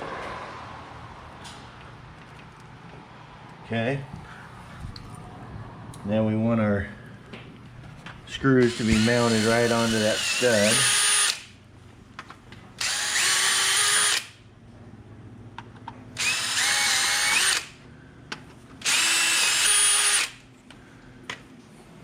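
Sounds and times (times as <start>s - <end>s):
power drill drilling into wall: 8.6s - 11.5s, 12.8s - 14.3s, 16.2s - 17.7s, 18.8s - 20.4s.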